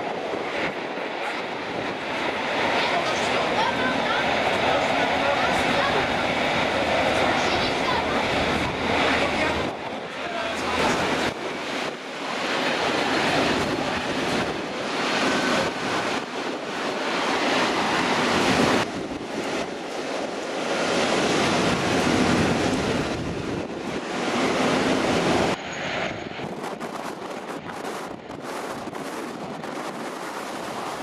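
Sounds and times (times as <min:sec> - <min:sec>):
gusty wind buffeting microphone: 0:00.0 - 0:31.0
heavy rain: 0:02.5 - 0:25.6.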